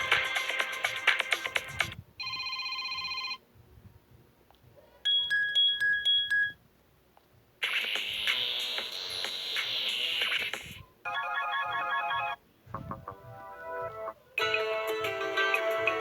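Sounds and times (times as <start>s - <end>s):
melodic phone ringtone: 0.0s - 3.4s, 5.1s - 6.6s, 11.1s - 16.0s
high beeping pings: 5.1s - 6.6s.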